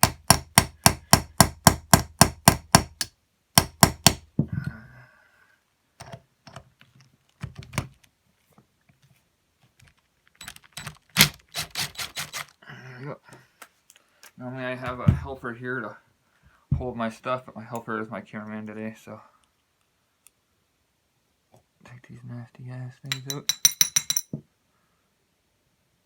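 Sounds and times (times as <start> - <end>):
impact tool metallic knocks: 0.0 - 4.2.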